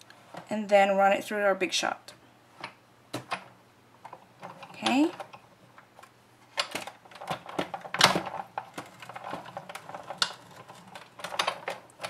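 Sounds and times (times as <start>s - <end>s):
die-cut machine clicking and clacking: 6.6s - 12.0s.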